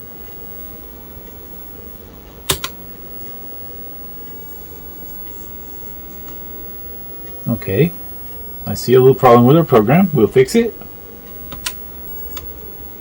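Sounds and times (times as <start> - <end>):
low background hum: 0.0 - 13.0
keyboard key click: 2.5 - 2.8, 11.5 - 11.8.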